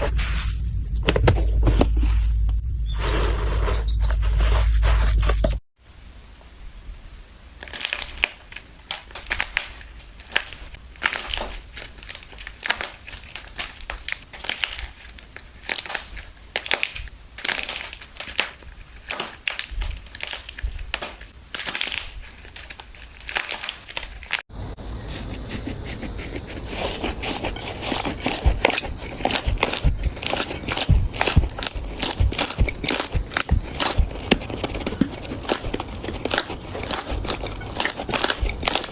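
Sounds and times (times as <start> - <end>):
slime crackling and crunching: 7.6 - 24.5, 26.4 - 38.9.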